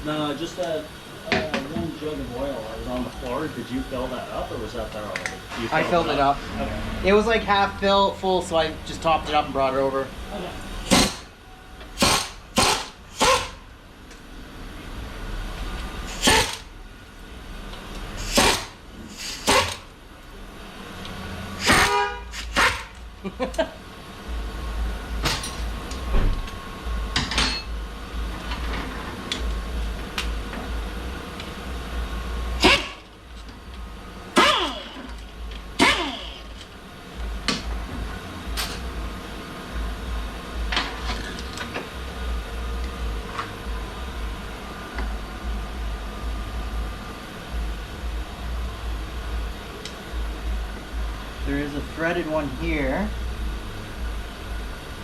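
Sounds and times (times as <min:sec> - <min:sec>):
low steady hum: 0:00.0 - 0:19.2, 0:19.8 - 0:55.0
metal clanks from tools: 0:27.2 - 0:27.7, 0:38.6 - 0:38.9.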